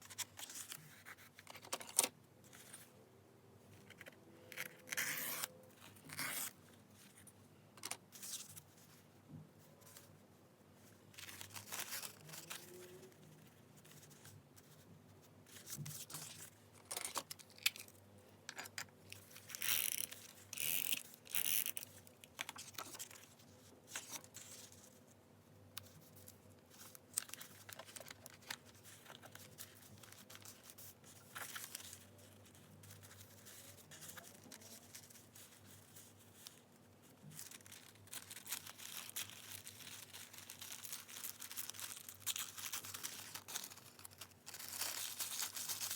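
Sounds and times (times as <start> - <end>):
paper rustling and tearing: 11.2 - 13.2, 37.2 - 45.9.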